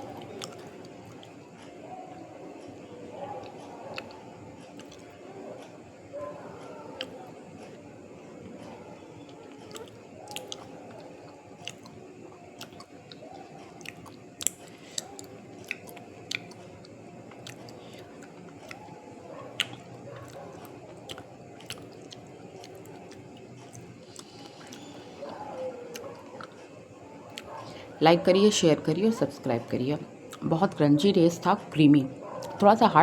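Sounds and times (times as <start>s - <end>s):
wet chewing: 0.0s - 7.8s, 8.5s - 31.6s, 32.2s - 32.9s
person speaking: 27.7s - 33.0s.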